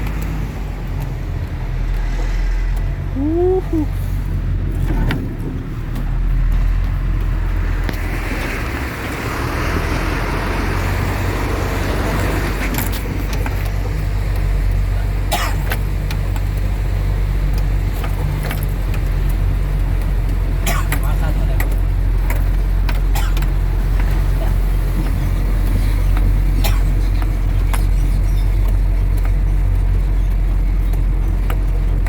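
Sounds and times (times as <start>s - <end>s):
sharp clicks: 0.0s - 8.0s
truck engine running: 0.0s - 32.0s.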